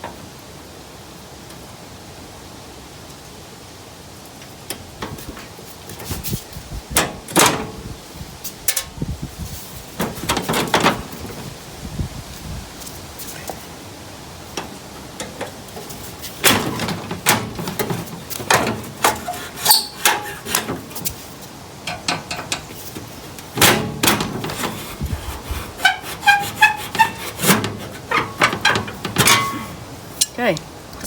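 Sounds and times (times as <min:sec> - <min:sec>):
metal knocks and clatter: 0:10.0 - 0:11.5, 0:14.6 - 0:21.2, 0:21.8 - 0:30.4
short squeaks: 0:16.0 - 0:21.2, 0:22.6 - 0:30.3.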